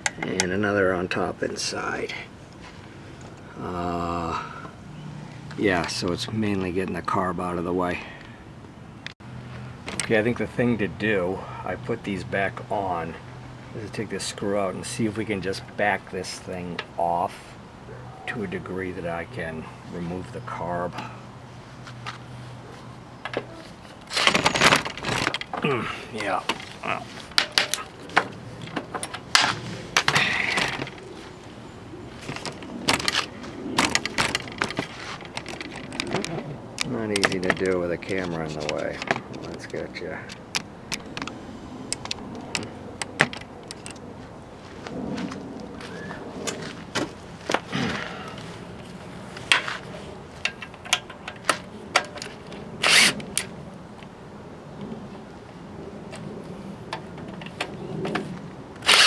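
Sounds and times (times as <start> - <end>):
scraping rustle: 19.4 - 41.5
metal parts clicking and knocking: 23.2 - 26.7, 27.3 - 31.1, 32.2 - 41.3, 41.9 - 44.0, 58.8 - 59.0
tools clinking on metal: 27.3 - 31.0
rasping burst: 58.8 - 59.0.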